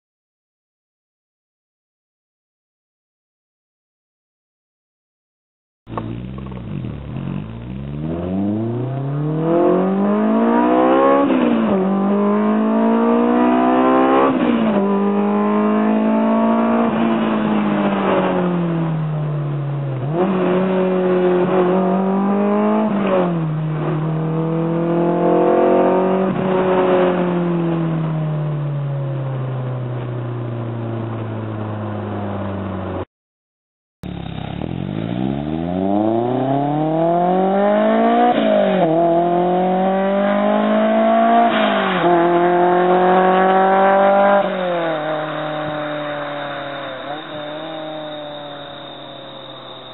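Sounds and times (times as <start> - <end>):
car engine accelerating through gears: 5.9 - 33.0, 34.1 - 49.9.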